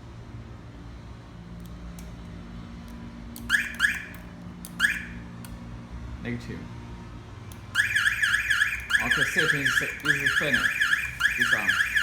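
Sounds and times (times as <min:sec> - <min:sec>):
car alarm siren chirps: 0:03.4 - 0:04.2, 0:04.8 - 0:05.2, 0:07.7 - 0:12.0.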